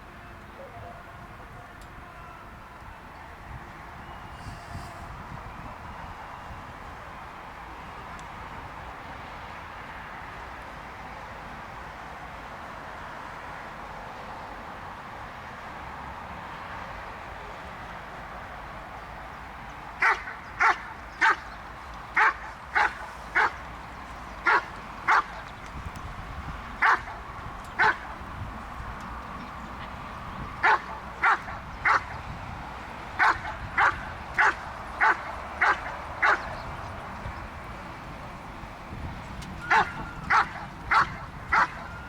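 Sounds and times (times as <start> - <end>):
dog barking sharply: 20.0 - 21.4, 24.5 - 25.3, 26.8 - 27.1, 33.2 - 36.5.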